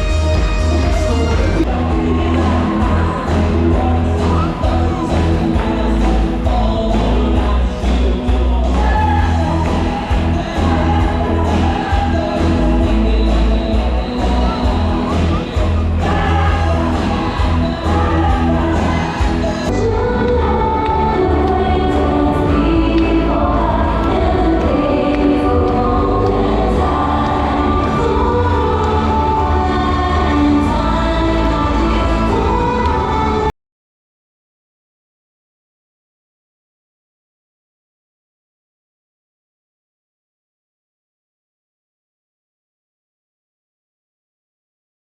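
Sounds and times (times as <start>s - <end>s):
loud music with heavy bass: 0.0s - 33.5s
person singing: 0.0s - 33.5s.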